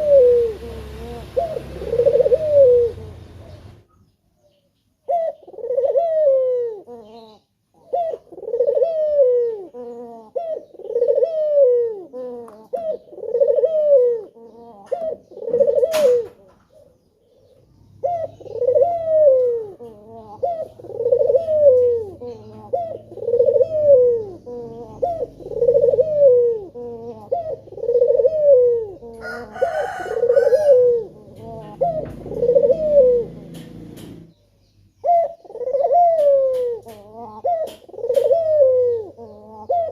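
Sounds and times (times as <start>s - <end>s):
dove cooing: 0.0s - 3.9s, 5.0s - 39.9s
sharp click: 33.5s - 34.3s.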